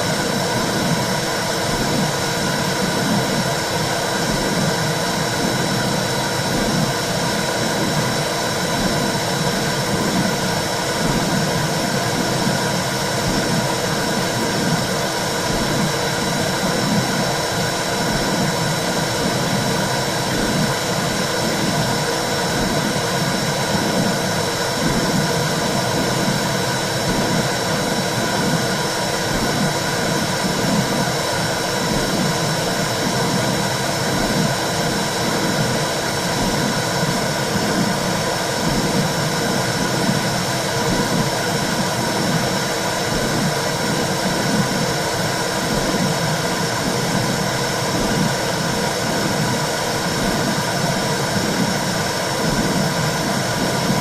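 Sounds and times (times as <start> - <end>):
low regular pulsing: 0.0 - 54.0.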